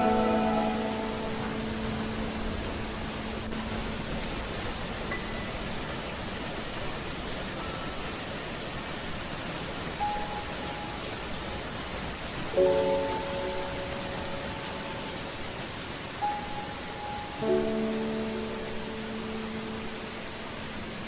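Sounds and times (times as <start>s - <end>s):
ringing chord: 0.0s - 3.6s
soft sustained musical notes: 0.0s - 9.0s, 9.6s - 21.0s
steady rain: 0.0s - 21.0s.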